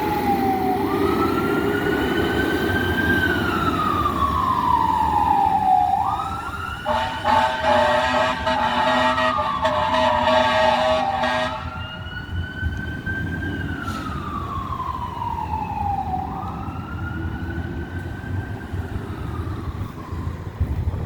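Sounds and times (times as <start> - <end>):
fire engine siren wailing: 0.0 - 21.0
truck engine and road rumble: 0.0 - 21.0
steady horn blast: 6.8 - 11.8.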